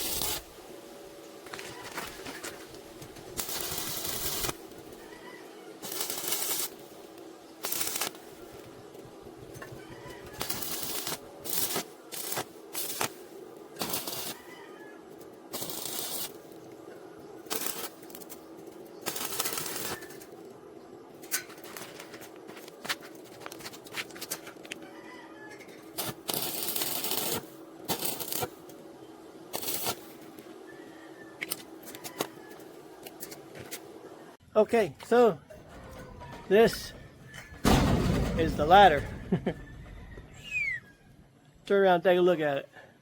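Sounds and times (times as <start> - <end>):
steady hum: 0.0 - 14.4
arc welder crackling: 0.0 - 24.8, 25.8 - 30.7, 31.3 - 34.1, 37.6 - 39.6.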